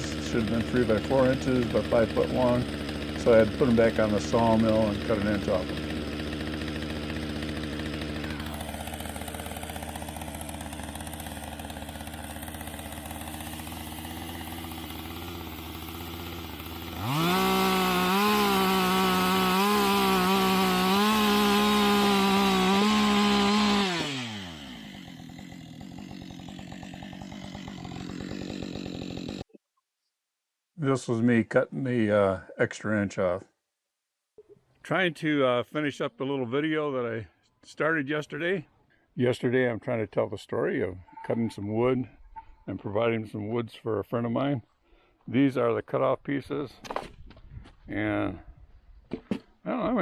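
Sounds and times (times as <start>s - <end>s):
sawmill engine idling and revving: 0.0s - 29.5s.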